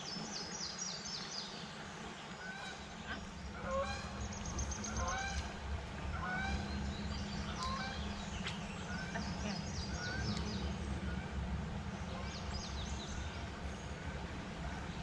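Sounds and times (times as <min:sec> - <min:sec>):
low hum: 0:00.0 - 0:15.0
geese honking: 0:02.4 - 0:06.9, 0:07.5 - 0:08.2.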